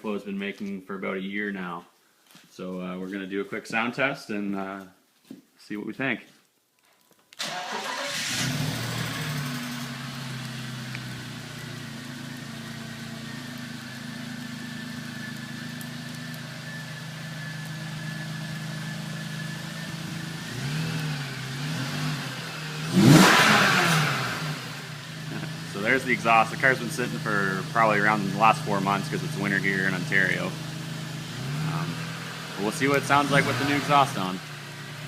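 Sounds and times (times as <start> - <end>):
car engine starting and idling: 7.4 - 35.0
engine revving: 7.4 - 35.0.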